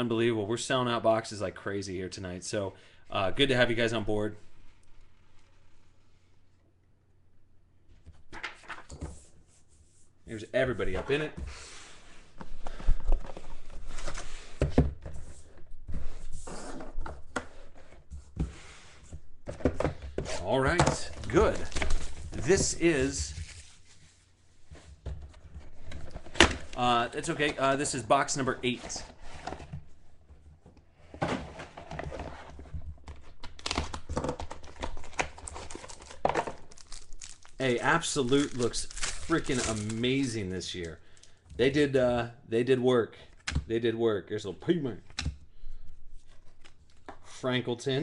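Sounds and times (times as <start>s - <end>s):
plastic wrapping crinkling and tearing: 33.6s - 40.5s.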